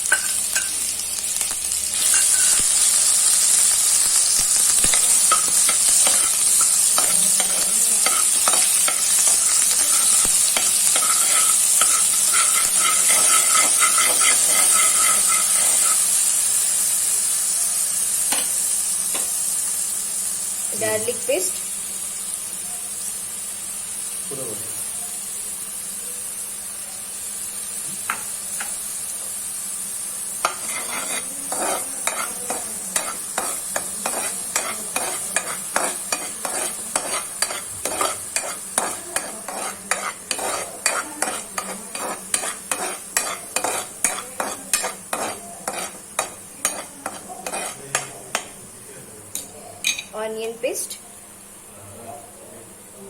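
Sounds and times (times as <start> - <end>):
paste sizzling in a pan: 0.0 - 53.0
spatula scraping a pan: 4.6 - 16.4, 30.4 - 48.5.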